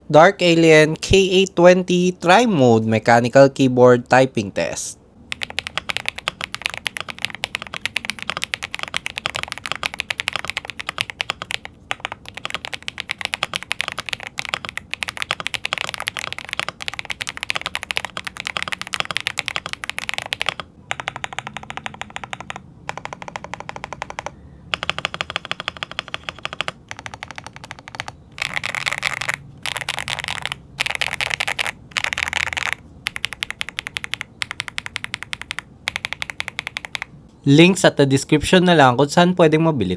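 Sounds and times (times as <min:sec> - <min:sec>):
mechanical keyboard typing: 0:05.3 - 0:37.1.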